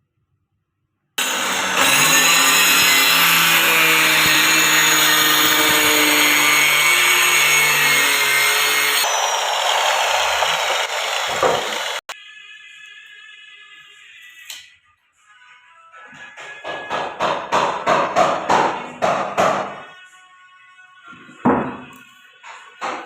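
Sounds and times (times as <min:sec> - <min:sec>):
electric woodworking tool hiss: 0:01.2 - 0:12.2
power tool hum: 0:01.2 - 0:12.2.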